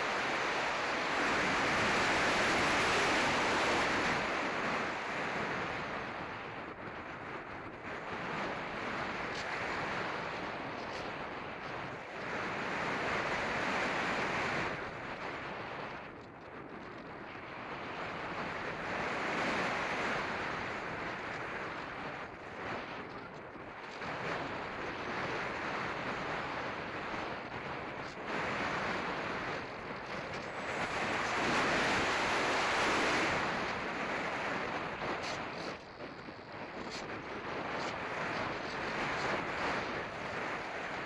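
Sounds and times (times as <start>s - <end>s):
wind rushing over microphone: 0.0s - 41.0s.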